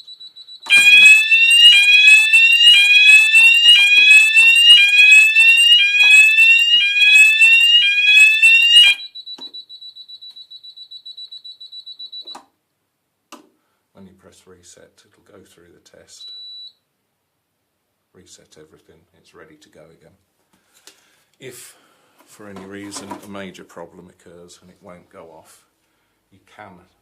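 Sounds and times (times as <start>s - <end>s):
fire alarm rising sweep tone: 0.7s - 9.1s.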